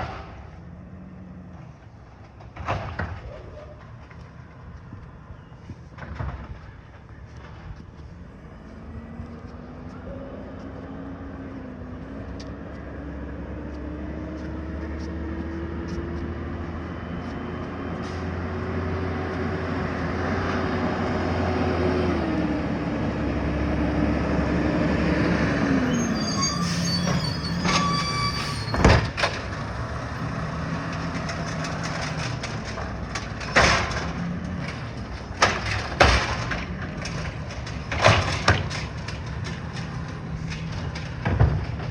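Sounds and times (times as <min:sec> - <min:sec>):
garbage truck engine: 0:00.0 - 0:41.9
high squeal: 0:25.6 - 0:31.4.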